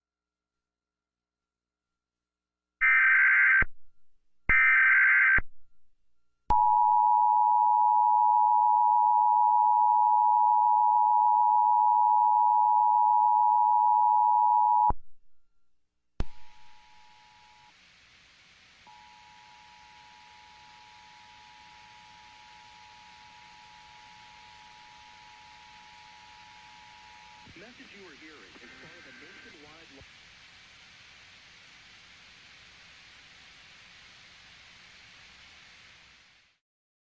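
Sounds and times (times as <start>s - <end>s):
faint hiss: 16.2s - 36.6s
harsh data burst screeches: 27.5s - 30.0s.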